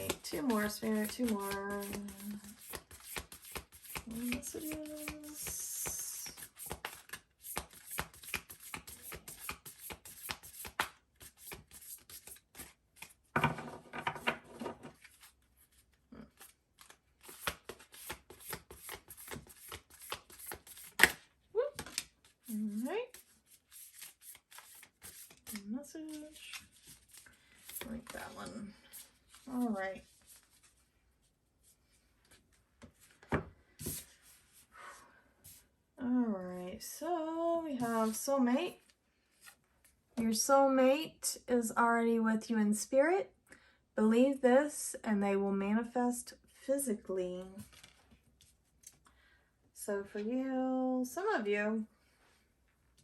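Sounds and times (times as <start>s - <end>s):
cards being shuffled: 0.0s - 13.2s, 15.0s - 21.2s, 21.8s - 30.8s.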